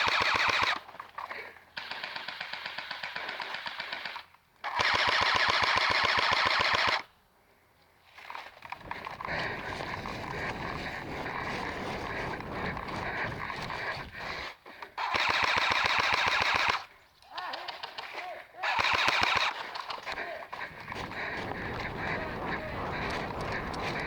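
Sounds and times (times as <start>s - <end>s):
airsoft guns firing full auto: 0.0s - 0.9s, 1.8s - 7.1s, 15.0s - 21.4s.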